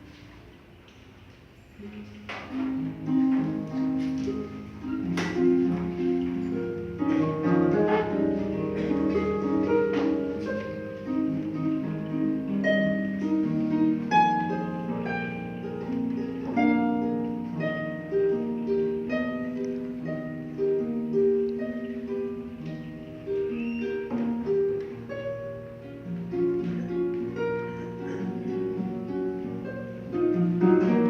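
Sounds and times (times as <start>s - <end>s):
harp playing: 1.8s - 31.0s.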